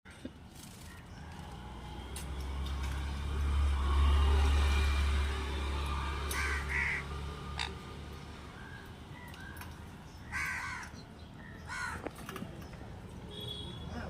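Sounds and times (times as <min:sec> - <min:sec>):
parrots squawking: 0:06.4 - 0:07.9.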